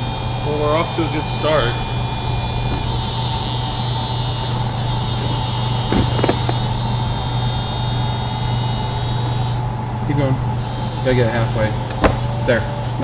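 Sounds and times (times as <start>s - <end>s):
car engine idling: 0.0s - 7.5s.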